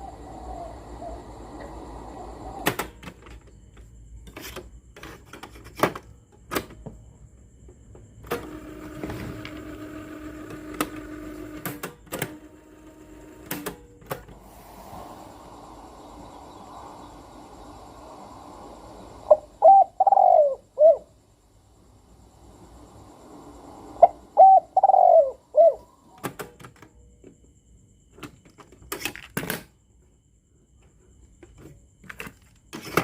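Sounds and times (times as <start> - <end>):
radio hiss: 14.4 - 19.7
steady tone: 14.4 - 20.0.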